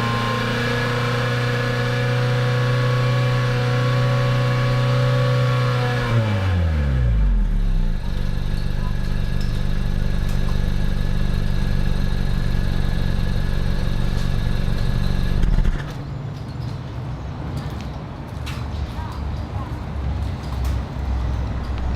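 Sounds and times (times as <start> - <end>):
car engine revving and idling: 0.0 - 16.1.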